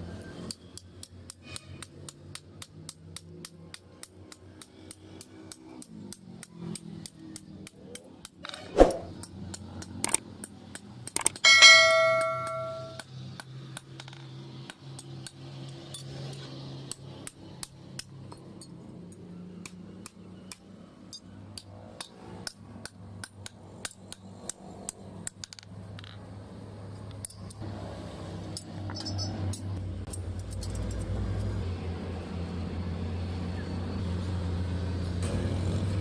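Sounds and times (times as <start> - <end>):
hand tools tapping metal: 11.1 - 13.0.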